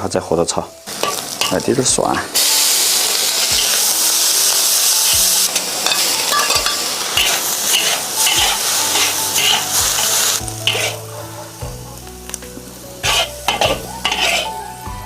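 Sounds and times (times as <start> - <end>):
peppers sizzling in oil: 0.0 - 15.0
spatula scraping pan: 5.9 - 11.1, 13.0 - 14.6.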